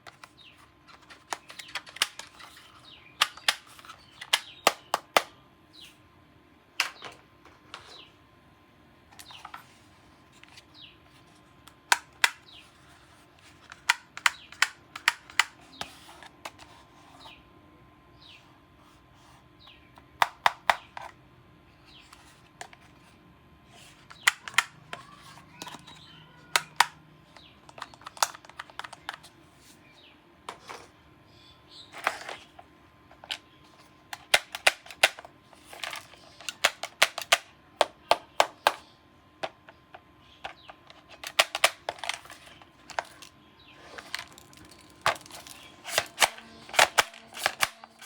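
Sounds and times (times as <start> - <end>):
toy gun plastic clicks: 35.8 - 37.5, 41.2 - 43.3, 44.0 - 48.0.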